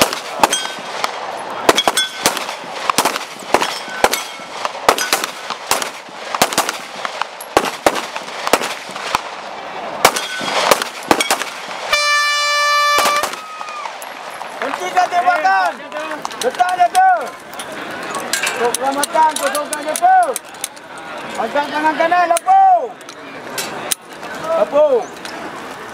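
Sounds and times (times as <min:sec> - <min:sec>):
pistol shots: 0:00.0 - 0:09.4, 0:10.0 - 0:12.0, 0:12.9 - 0:13.4
signal horn blast: 0:11.9 - 0:13.3.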